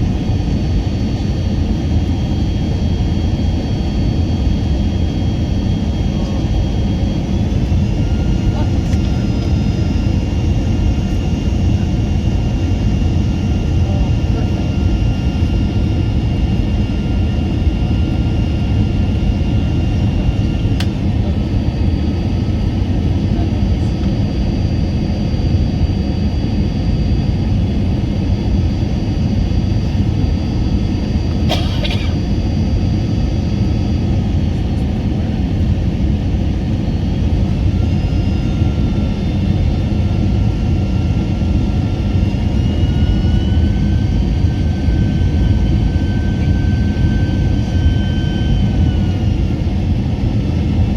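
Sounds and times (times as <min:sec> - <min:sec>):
jet airliner cabin roar: 0:00.0 - 0:50.9
click: 0:20.8 - 0:21.0.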